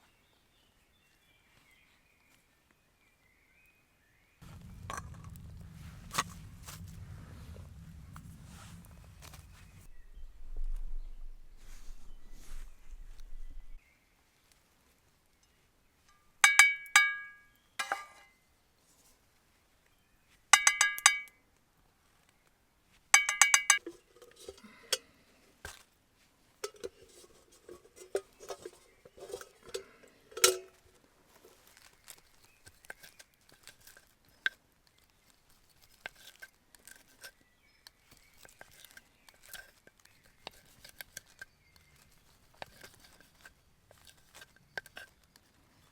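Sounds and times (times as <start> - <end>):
metal cookware knocking: 16.4 - 18.2, 20.6 - 21.3, 23.2 - 24.6, 26.6 - 30.8
metal scraping and clicking: 26.6 - 34.6.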